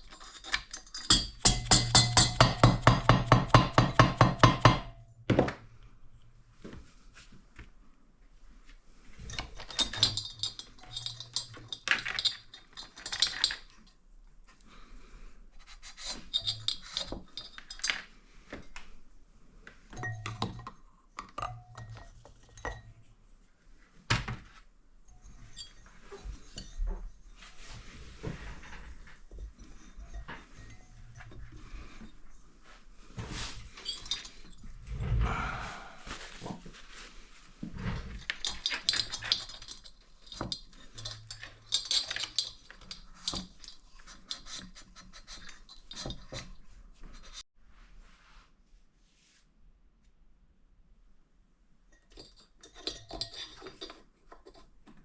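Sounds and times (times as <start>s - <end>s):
metal tools clinking: 0.0s - 2.7s, 9.2s - 14.0s, 16.0s - 18.7s, 20.0s - 23.0s, 25.1s - 27.8s, 28.6s - 32.2s, 33.5s - 34.8s, 38.1s - 46.6s, 51.9s - 54.6s.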